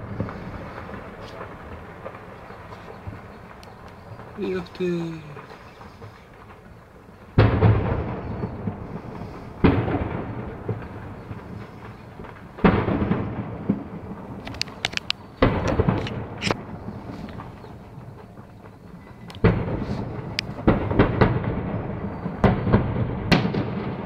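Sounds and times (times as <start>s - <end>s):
heavy explosions with rumbling echo: 0.0s - 24.0s
sharp cracks: 0.0s - 24.0s.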